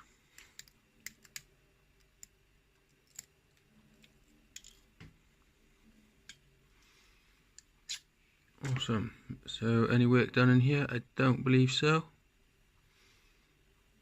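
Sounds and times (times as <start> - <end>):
small metal lock parts clicking: 3.0 - 3.3.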